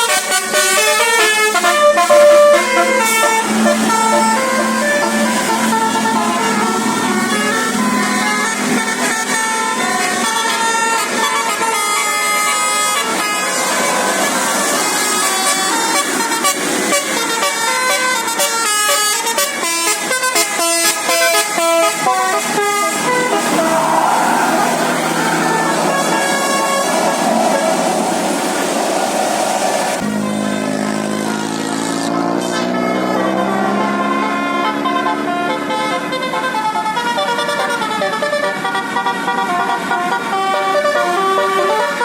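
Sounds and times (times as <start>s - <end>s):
musical air horn melody: 0.0s - 42.0s.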